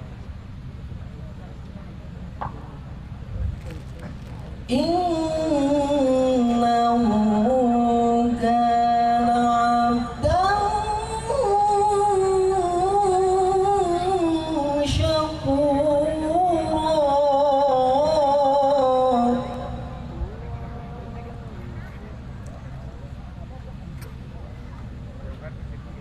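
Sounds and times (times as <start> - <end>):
man chanting melodically: 18.4 - 22.3.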